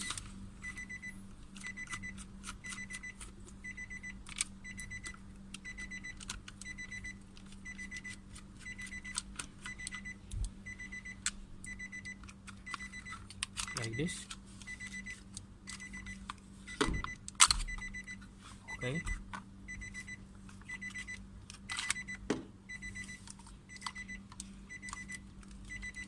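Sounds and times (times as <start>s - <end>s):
car warning chime beeping: 9.7s - 13.1s, 21.9s - 23.2s.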